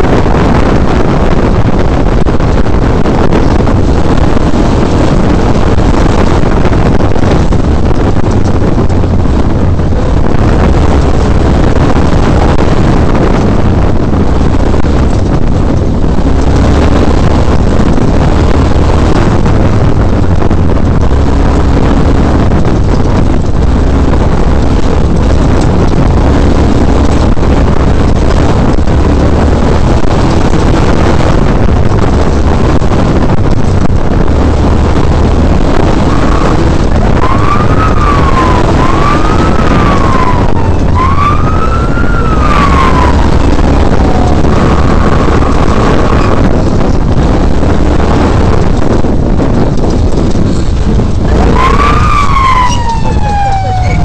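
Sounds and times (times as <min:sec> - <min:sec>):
truck engine running hard: 0:00.0 - 0:54.0
higher tone rising and falling: 0:35.9 - 0:46.6, 0:51.2 - 0:54.0.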